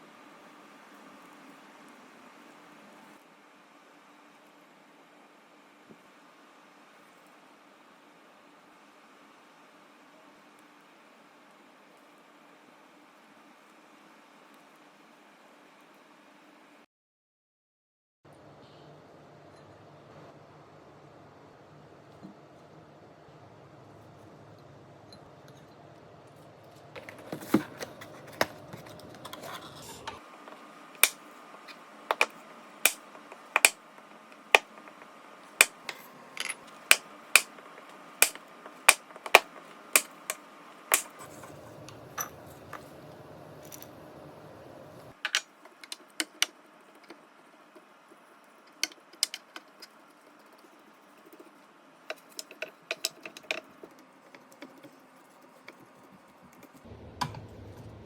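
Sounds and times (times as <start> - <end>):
baking tools clicking and tapping: 27.0 - 30.2, 32.1 - 33.8, 34.4 - 46.5.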